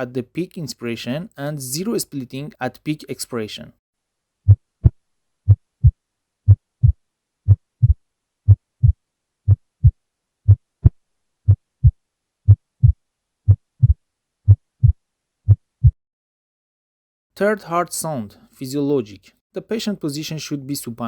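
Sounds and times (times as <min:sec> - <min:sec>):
heart sounds through stethoscope: 0:04.5 - 0:16.0.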